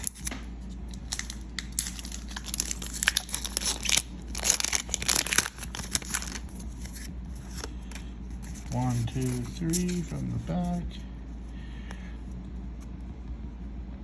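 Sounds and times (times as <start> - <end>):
foil wrapper tearing and crinkling: 0.0 - 0.3, 0.9 - 7.6.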